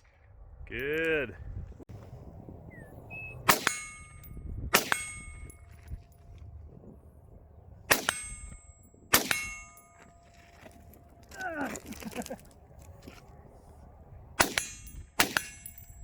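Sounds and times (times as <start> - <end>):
gunshots: 3.5 - 3.9, 4.7 - 5.3, 7.9 - 8.4, 9.1 - 9.8, 14.4 - 15.8
steel plate target clanging: 3.5 - 6.3, 7.9 - 11.3, 14.4 - 16.0.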